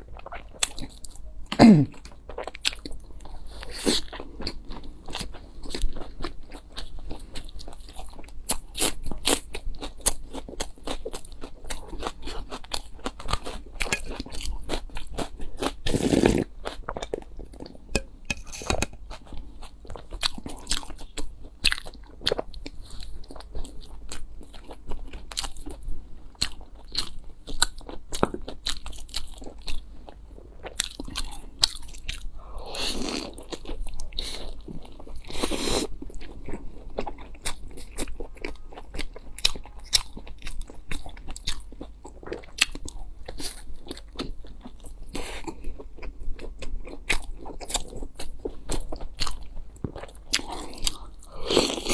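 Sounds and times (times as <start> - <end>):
fuller mouth sounds: 0.0 - 2.4
person chewing crunchy food: 0.0 - 51.9.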